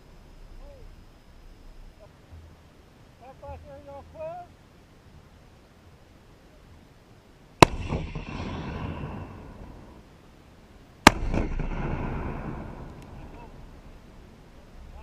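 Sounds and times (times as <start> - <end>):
recoilless rifle blasts: 7.6 - 10.0, 11.0 - 14.2.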